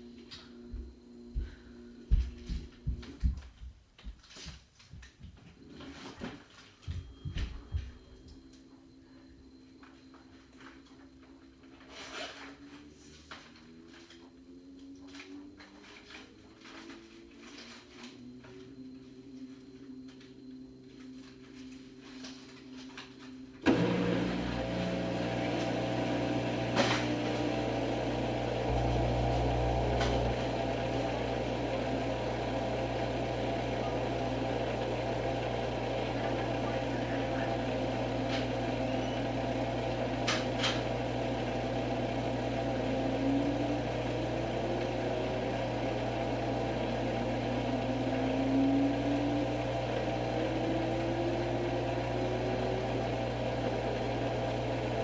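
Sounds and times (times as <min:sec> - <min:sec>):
washing machine spinning: 0:22.5 - 0:55.0.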